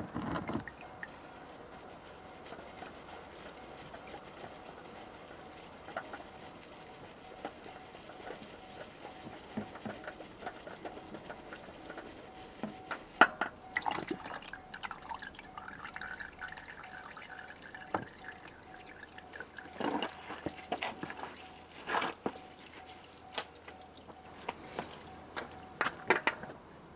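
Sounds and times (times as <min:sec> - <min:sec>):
oil pouring and dripping: 0:00.1 - 0:24.8.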